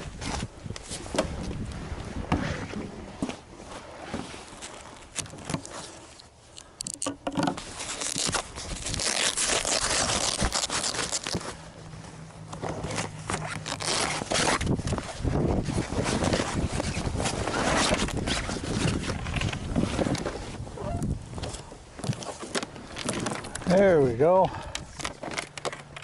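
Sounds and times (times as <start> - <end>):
fabric cover rustling and scraping: 0.0 - 6.2, 7.5 - 23.8.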